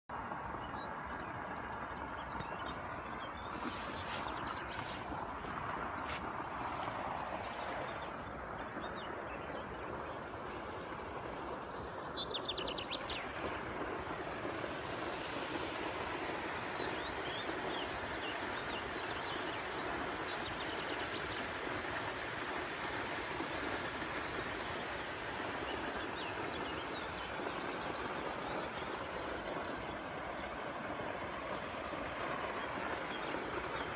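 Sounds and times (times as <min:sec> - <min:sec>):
river rushing: 0:00.2 - 0:32.6
birds chirping: 0:00.6 - 0:21.4.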